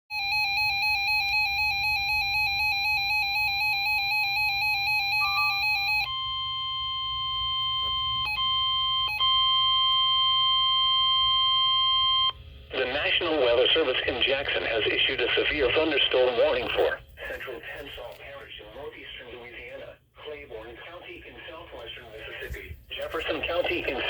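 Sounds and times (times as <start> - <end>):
steady high alarm tone: 0.1 - 12.4
warbling electronic alarm tone: 0.1 - 12.4.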